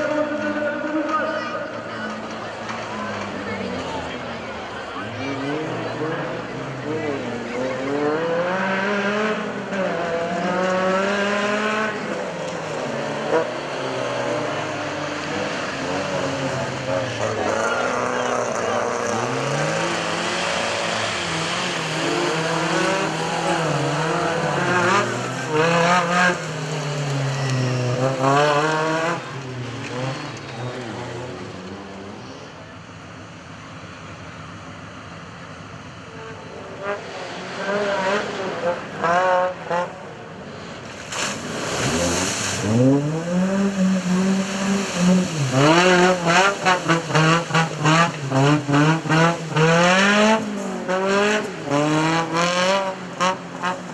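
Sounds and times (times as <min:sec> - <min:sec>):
engine revving hard: 0:05.2 - 0:31.6, 0:41.1 - 0:53.8.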